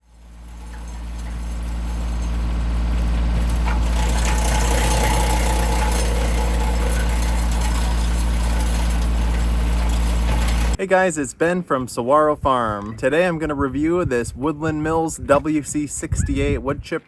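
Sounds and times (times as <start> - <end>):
woodchipper rushing noise: 0.0 - 11.2
tractor diesel engine humming: 0.0 - 16.5.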